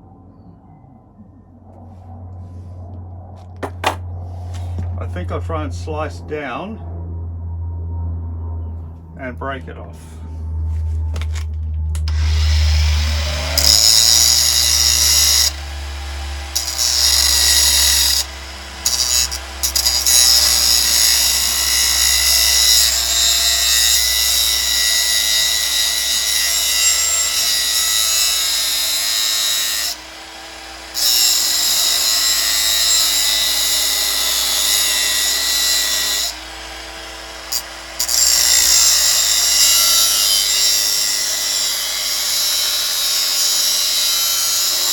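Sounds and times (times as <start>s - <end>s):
angle grinder cutting steel: 12.0s - 44.9s.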